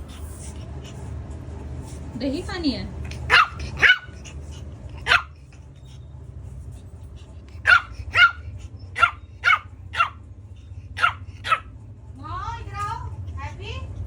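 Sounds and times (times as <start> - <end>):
puppy barking: 3.1 - 5.6, 7.6 - 10.3, 10.9 - 11.8.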